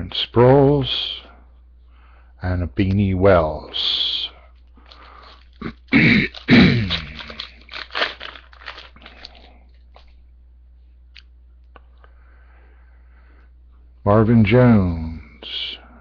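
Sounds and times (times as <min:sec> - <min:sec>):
foil wrapper tearing and crinkling: 0:04.8 - 0:10.1.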